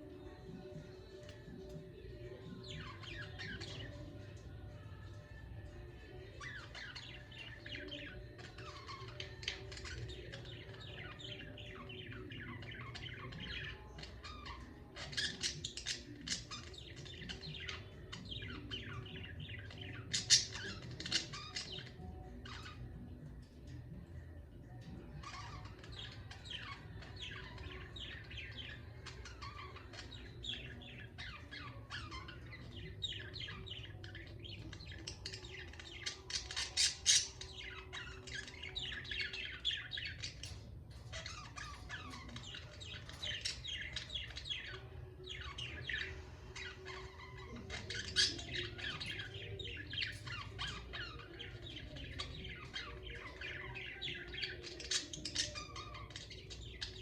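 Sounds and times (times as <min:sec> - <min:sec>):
budgerigars chattering: 0:41.1 - 0:57.0.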